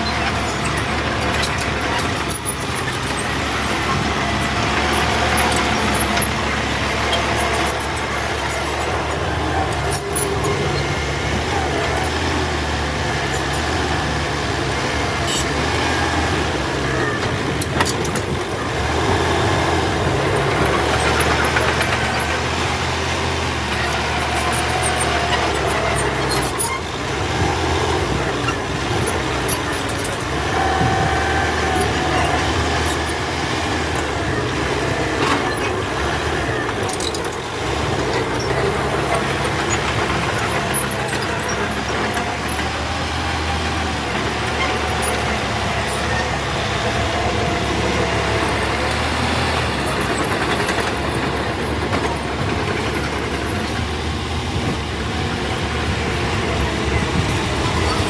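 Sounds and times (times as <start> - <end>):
diesel earthmoving machine engine: 0.0 - 58.0.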